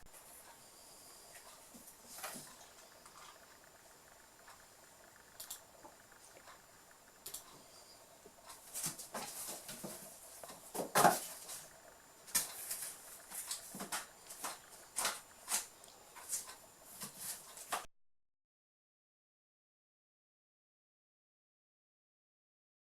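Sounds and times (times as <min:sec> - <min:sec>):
kittens scraping cardboard box: 0:08.7 - 0:11.7, 0:12.3 - 0:17.8.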